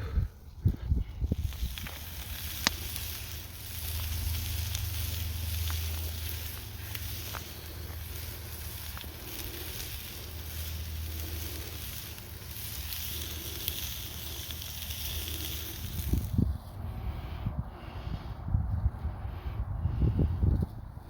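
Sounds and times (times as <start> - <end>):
campfire crackles: 0.0 - 18.1
food sizzling in a pan: 1.3 - 16.3.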